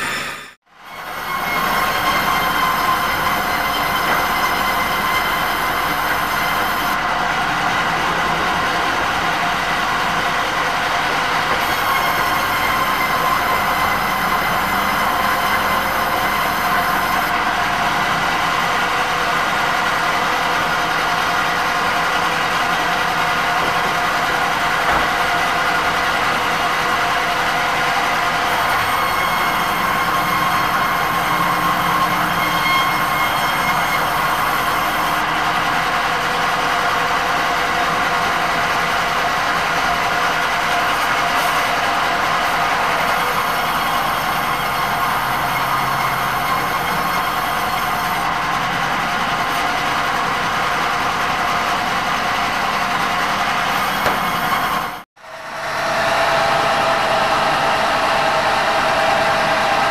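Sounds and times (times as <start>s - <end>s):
loud mechanical running noise: 0.0s - 59.9s.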